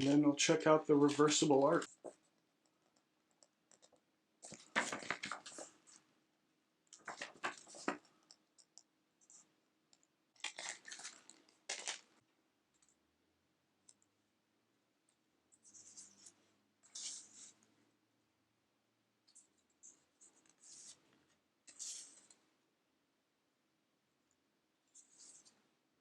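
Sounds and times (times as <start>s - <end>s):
paper rustling and crackling: 4.4s - 6.0s, 6.9s - 8.0s, 10.4s - 12.1s.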